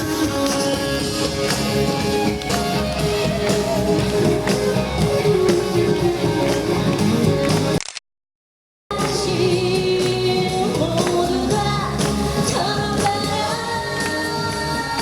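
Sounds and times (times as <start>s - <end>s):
guitar: 0.0s - 7.8s, 8.9s - 15.0s
live band playing: 0.0s - 7.8s
steady drum beat: 0.0s - 7.8s.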